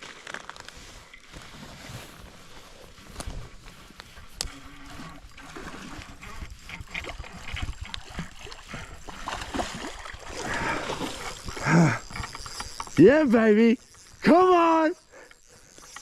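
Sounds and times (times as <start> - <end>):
fish splashing in water: 5.3 - 11.6.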